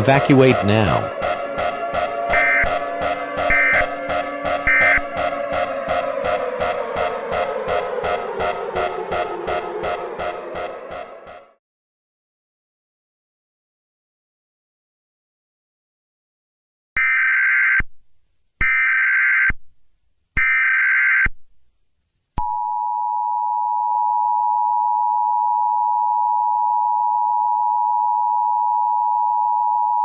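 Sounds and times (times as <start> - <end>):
data screech bursts: 0.0 - 1.2, 2.3 - 4.0, 4.6 - 5.0
two-tone attention signal: 0.0 - 11.4.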